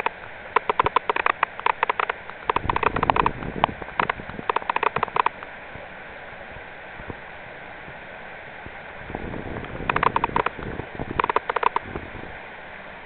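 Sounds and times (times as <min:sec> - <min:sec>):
rapid clicking: 0:00.0 - 0:05.5, 0:09.6 - 0:11.9
stream water running: 0:00.0 - 0:13.0.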